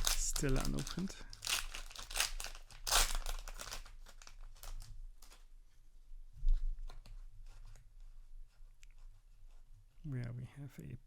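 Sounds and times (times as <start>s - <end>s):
foil wrapper crinkling: 0.0s - 5.5s.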